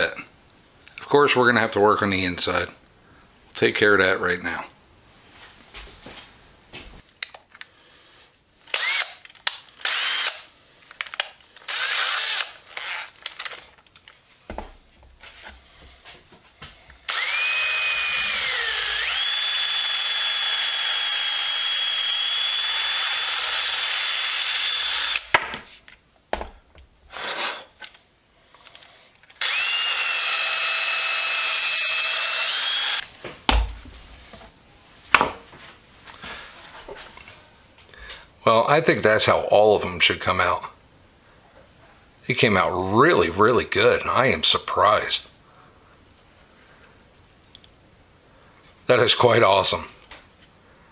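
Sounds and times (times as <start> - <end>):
power tool high whine: 8.8 - 9.1, 9.8 - 10.4, 11.7 - 12.5, 17.1 - 25.2, 29.4 - 33.0.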